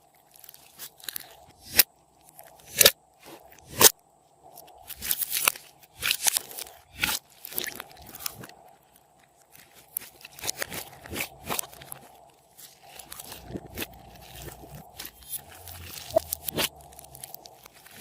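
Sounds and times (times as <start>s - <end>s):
slime squishing and popping: 12.7s - 18.0s.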